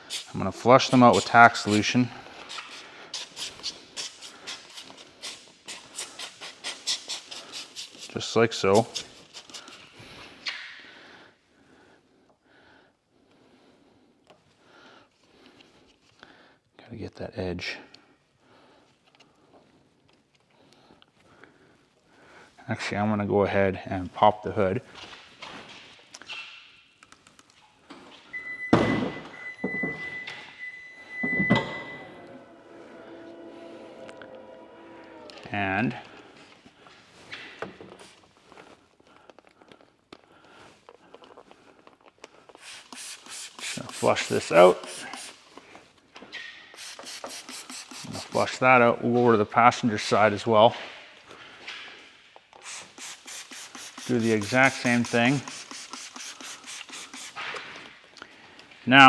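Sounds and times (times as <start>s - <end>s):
trigger spray bottle squirting: 0.0s - 8.1s, 8.8s - 10.7s, 42.6s - 45.5s, 46.7s - 48.5s, 52.5s - 57.7s.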